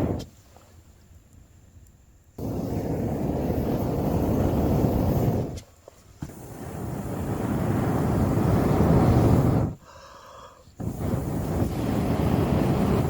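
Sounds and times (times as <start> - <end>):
wind buffeting microphone: 0.0 - 0.4, 2.4 - 5.6, 6.2 - 9.8, 10.8 - 13.0.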